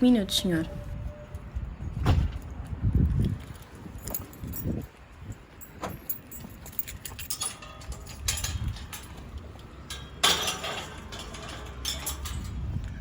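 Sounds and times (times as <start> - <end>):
keys jangling: 3.6 - 12.8.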